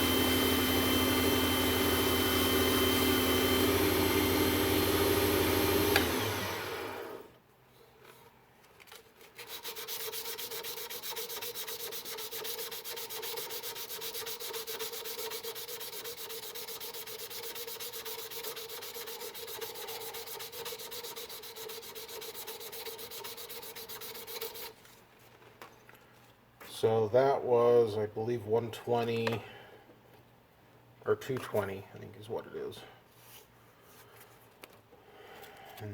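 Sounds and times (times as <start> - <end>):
lathe running: 0.0 - 7.3
sandpaper rasping on spinning wood: 9.4 - 24.8.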